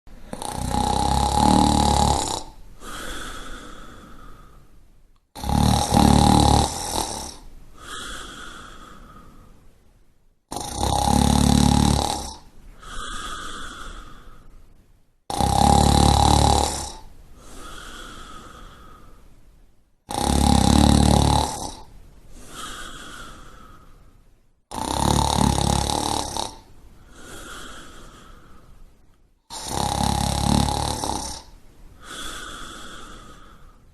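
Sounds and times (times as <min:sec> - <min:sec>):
loud snoring: 0:00.2 - 0:04.5, 0:05.3 - 0:09.0, 0:10.5 - 0:14.3, 0:15.3 - 0:19.0, 0:20.1 - 0:23.8, 0:24.7 - 0:28.4, 0:29.5 - 0:33.7
quiet out-breath: 0:02.7 - 0:04.9, 0:07.4 - 0:09.8, 0:12.5 - 0:14.8, 0:17.3 - 0:19.4, 0:22.2 - 0:24.4, 0:26.9 - 0:29.0, 0:32.0 - 0:33.9.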